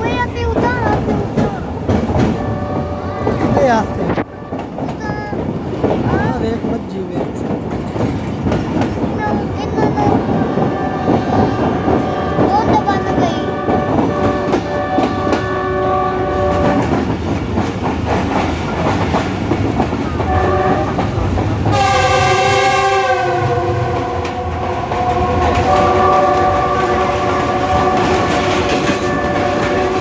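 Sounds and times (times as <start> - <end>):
train wheels clacking on rails: 0.0 - 30.0
train horn blasts: 2.2 - 4.8, 10.1 - 17.0, 20.3 - 30.0.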